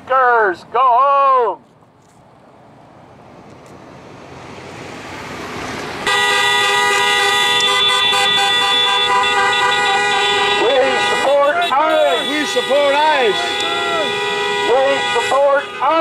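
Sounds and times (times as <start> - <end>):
car road noise: 0.0 - 16.0
car horn long blast: 6.0 - 16.0.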